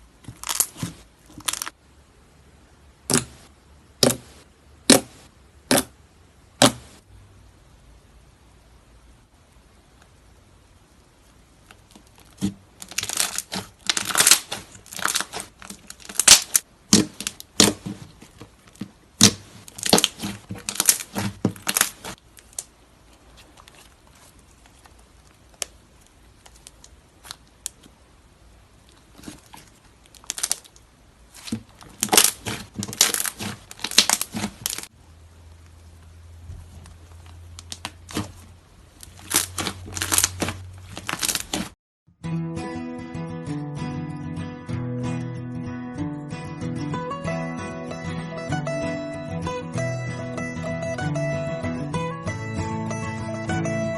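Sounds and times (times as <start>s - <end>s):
slime crackling and popping: 0.2s - 1.8s, 11.6s - 28.0s, 28.8s - 34.9s, 36.7s - 41.8s.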